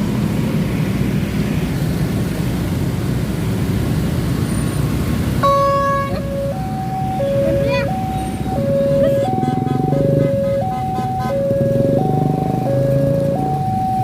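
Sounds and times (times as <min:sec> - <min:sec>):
road traffic rumbling: 0:00.0 - 0:14.0
level crossing two-tone warning: 0:05.4 - 0:14.0.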